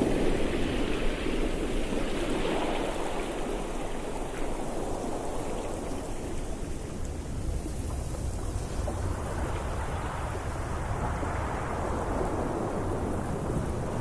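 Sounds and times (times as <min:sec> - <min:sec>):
ocean surf rushing: 0:00.0 - 0:06.7.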